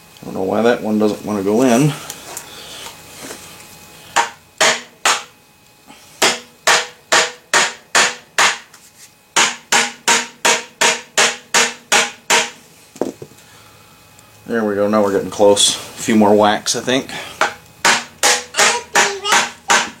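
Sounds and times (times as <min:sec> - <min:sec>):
hammer knocking plastic pipe: 0:17.4 - 0:20.0.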